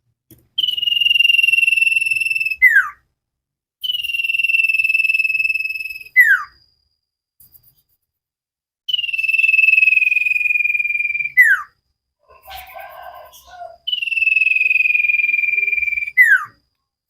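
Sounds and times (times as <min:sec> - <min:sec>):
bird whistling long notes: 0:00.6 - 0:03.0, 0:03.8 - 0:06.6, 0:08.9 - 0:16.6.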